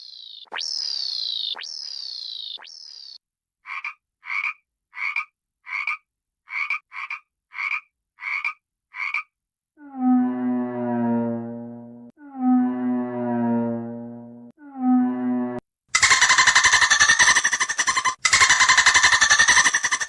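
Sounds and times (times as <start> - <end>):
frog croaking: 0.0 - 10.9, 16.0 - 20.0
loud sustained pitched note: 9.8 - 15.6
falling whistle-like glides: 9.8 - 20.0.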